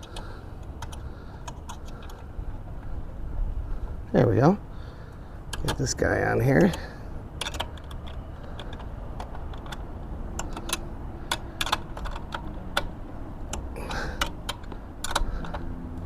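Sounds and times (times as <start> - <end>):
ratchet wrench clicking: 6.6 - 15.7.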